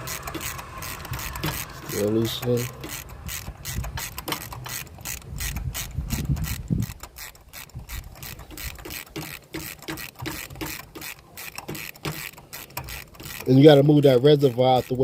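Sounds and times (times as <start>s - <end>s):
ratchet wrench clicking: 0.0s - 15.0s.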